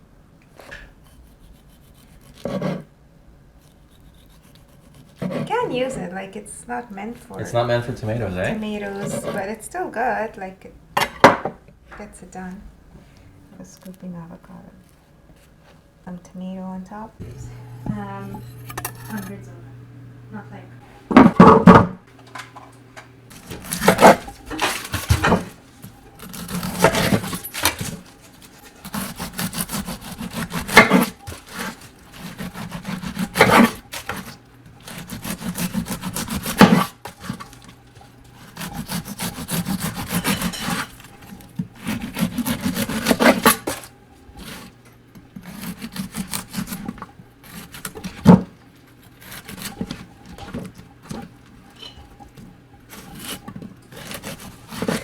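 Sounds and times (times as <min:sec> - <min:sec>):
bread knife sawing through bread: 0:01.0 - 0:02.9, 0:03.6 - 0:06.0, 0:07.4 - 0:09.6, 0:23.3 - 0:44.8, 0:45.4 - 0:51.4, 0:52.9 - 0:55.0.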